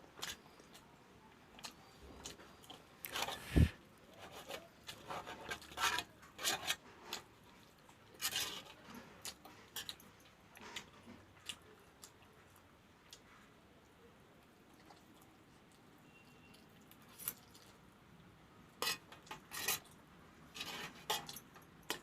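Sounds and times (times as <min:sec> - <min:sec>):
person chewing soft food: 0:00.1 - 0:03.7, 0:06.7 - 0:18.3.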